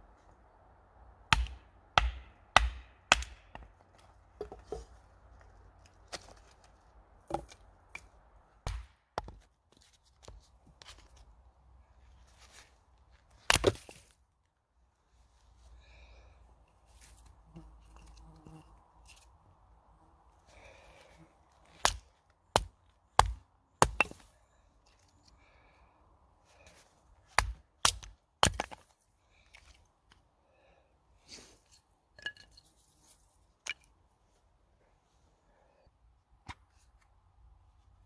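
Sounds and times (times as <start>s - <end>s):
sharp cracks and knocks: 1.3s - 5.0s.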